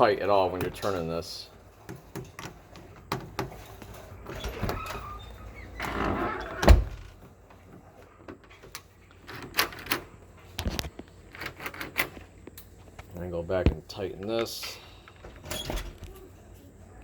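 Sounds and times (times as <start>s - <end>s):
lock rattle: 11.3s - 12.2s.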